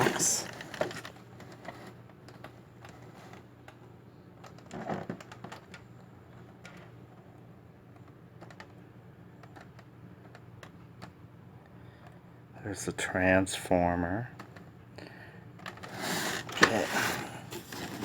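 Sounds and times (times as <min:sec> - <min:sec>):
low steady hum: 0:05.7 - 0:18.0.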